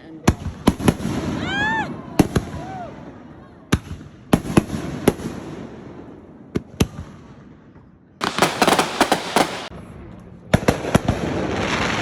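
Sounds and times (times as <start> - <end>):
firework bangs: 0.3 - 7.5, 8.2 - 9.8
rapid crackling firework pops: 3.7 - 5.4, 6.5 - 7.2, 8.2 - 9.7.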